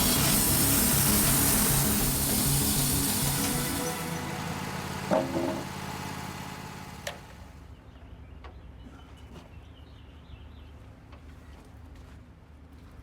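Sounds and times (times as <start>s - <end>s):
sawmill engine running: 0.0s - 7.6s
metallic clunk: 4.6s - 5.8s
faint birdsong: 7.6s - 10.9s.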